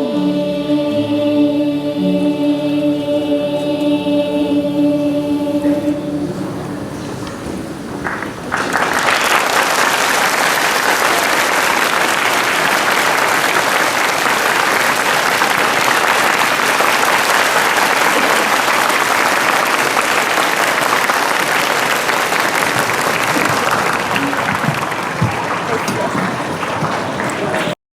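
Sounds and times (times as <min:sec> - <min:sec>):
audience applauding: 0:06.2 - 0:27.8.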